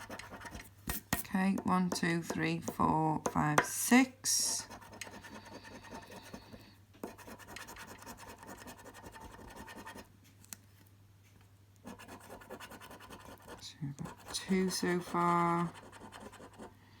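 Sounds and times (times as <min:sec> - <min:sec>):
scratching a scratch card: 0:00.0 - 0:01.3, 0:04.5 - 0:10.0, 0:11.8 - 0:16.7.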